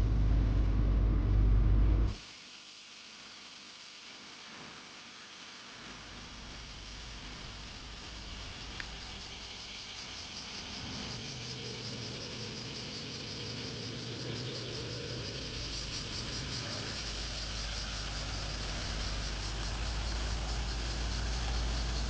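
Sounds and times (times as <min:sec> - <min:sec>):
low rumble: 0:00.0 - 0:02.2, 0:07.8 - 0:22.0
insects chorus: 0:02.1 - 0:22.0.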